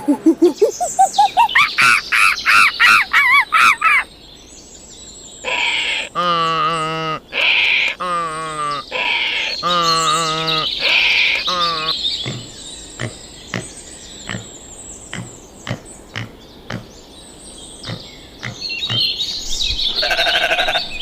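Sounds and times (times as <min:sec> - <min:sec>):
harsh hissy animal call: 0:05.4 - 0:12.4, 0:19.9 - 0:21.0.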